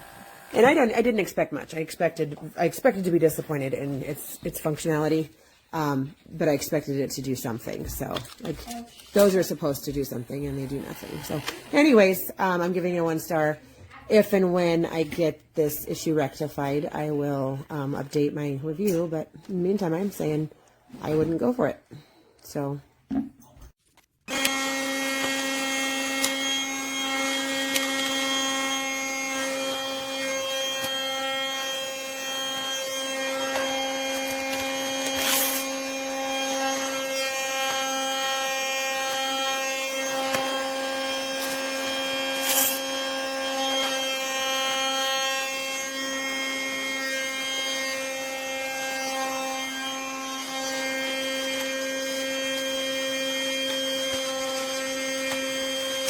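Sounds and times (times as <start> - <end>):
toy vacuum motor humming: 0.0 - 1.0, 9.9 - 11.9, 24.3 - 56.0.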